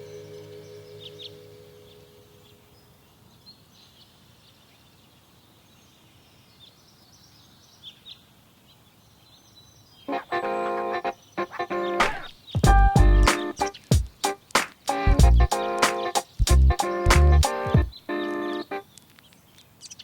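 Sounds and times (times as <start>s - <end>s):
background music: 0.0s - 2.7s, 10.1s - 18.8s
high bird chirps: 0.0s - 3.3s, 9.8s - 17.1s
outdoor ambience: 0.0s - 20.0s
loud music: 12.0s - 17.9s.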